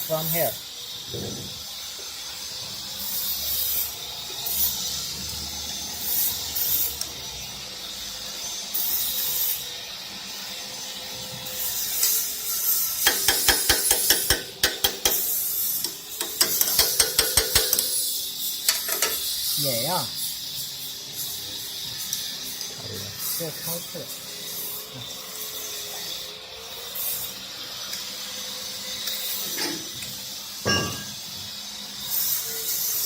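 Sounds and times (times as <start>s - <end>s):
steady hiss: 11.6s - 25.6s.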